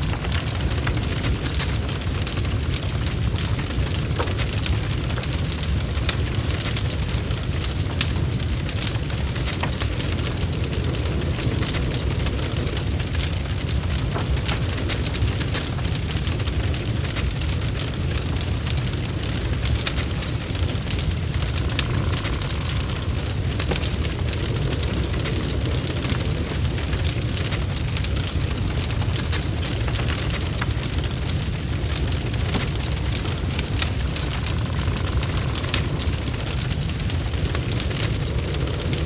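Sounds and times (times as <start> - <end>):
bonfire crackling: 0.0 - 39.0
low rumble of burning: 0.0 - 39.0.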